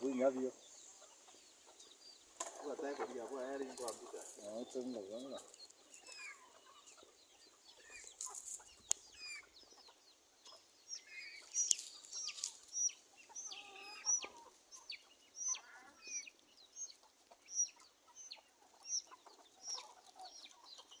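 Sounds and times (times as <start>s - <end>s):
chickens clucking: 0.0s - 21.0s
high-pitched peeping: 0.0s - 21.0s.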